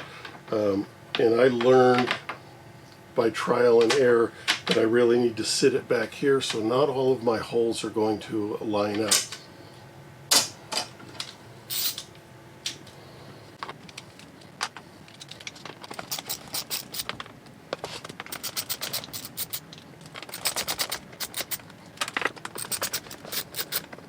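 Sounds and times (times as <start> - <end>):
screwdriver clicking: 16.0 - 17.1, 18.3 - 19.6, 20.2 - 21.6, 22.6 - 23.9.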